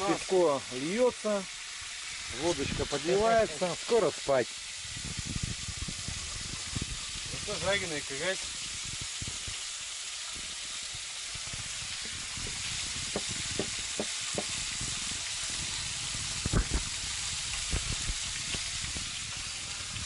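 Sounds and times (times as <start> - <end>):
fish sizzling in hot oil: 0.0 - 20.0
oil popping: 8.5 - 20.0.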